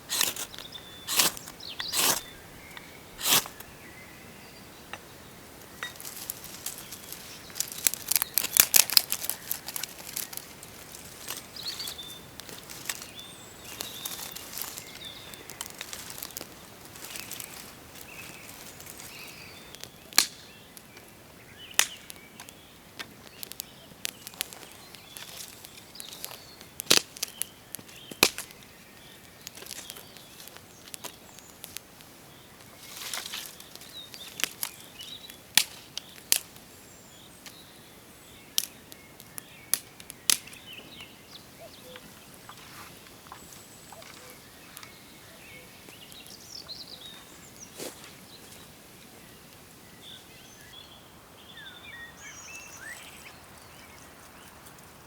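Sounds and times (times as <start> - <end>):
birds chirping: 0.0 - 55.0
rustling handling noises: 5.6 - 20.0, 23.0 - 36.4.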